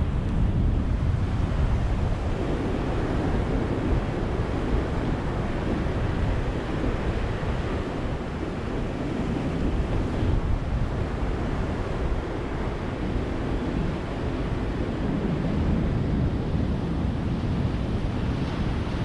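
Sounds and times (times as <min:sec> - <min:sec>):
waves breaking on a beach: 0:00.0 - 0:19.0.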